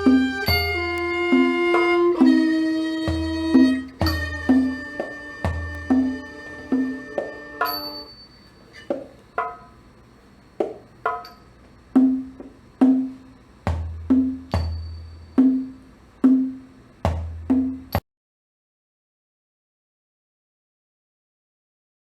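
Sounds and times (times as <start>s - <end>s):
high ringing metal strikes: 0.0s - 2.3s, 3.1s - 9.8s, 11.1s - 11.6s, 13.8s - 16.7s
deep drum strokes: 0.0s - 7.8s, 12.0s - 18.0s.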